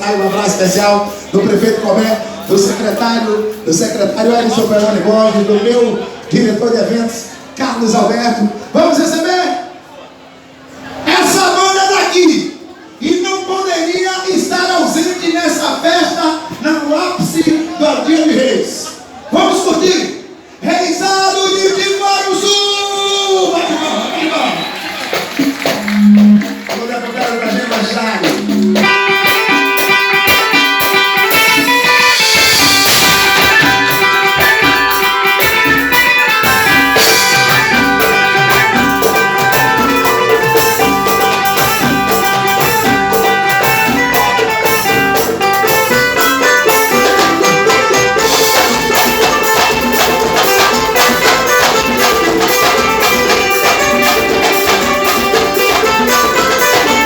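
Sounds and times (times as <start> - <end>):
guitar: 24.6 - 57.0
drums with steady beat: 24.9 - 57.0.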